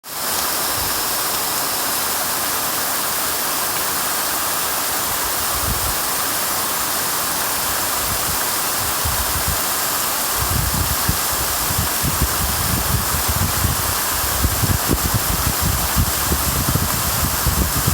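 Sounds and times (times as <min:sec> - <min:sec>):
waterfall rushing: 0:00.0 - 0:17.9.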